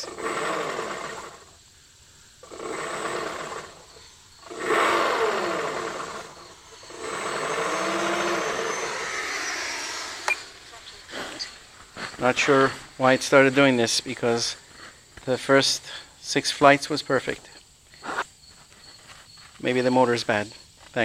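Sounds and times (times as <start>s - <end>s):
model aircraft motor whirring: 0.0s - 1.6s, 2.4s - 12.6s.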